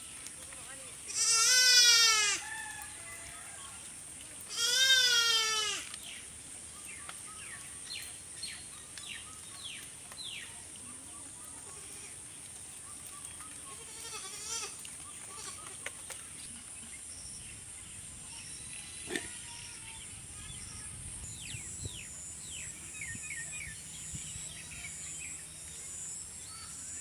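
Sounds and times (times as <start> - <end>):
goat bleating: 1.1 - 2.4, 4.5 - 5.9, 13.7 - 15.7.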